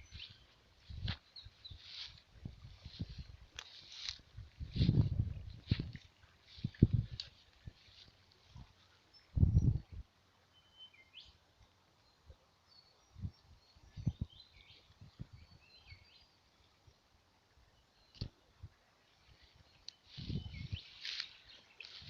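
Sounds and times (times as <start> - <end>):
birds chirping: 0.0 - 2.2, 19.1 - 22.0
dull low thumps: 4.4 - 6.0.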